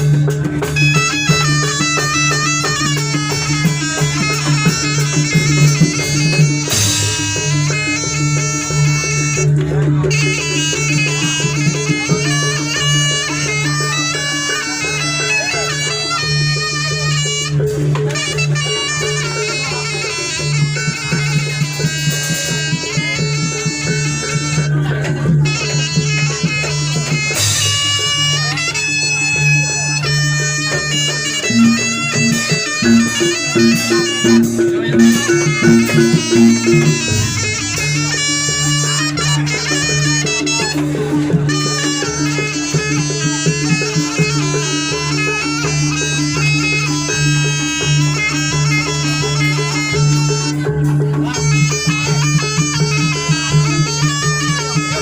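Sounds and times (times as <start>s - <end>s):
drum strokes: 0.0s - 15.0s, 16.6s - 46.5s
gamelan percussion: 0.0s - 55.0s
shrill double-reed wailing melody: 30.0s - 39.3s
repeating struck notes: 31.2s - 38.1s
low held tones: 31.4s - 37.8s.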